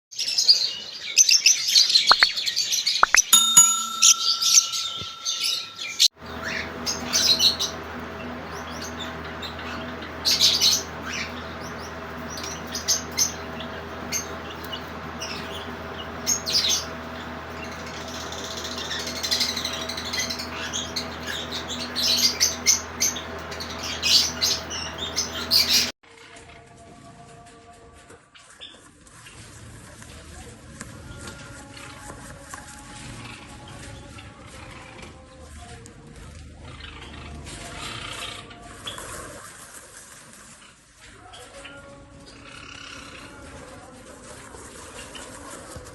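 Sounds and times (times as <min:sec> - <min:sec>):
sparrows chirping: 0:03.0 - 0:25.9
steady low hum: 0:03.4 - 0:25.9.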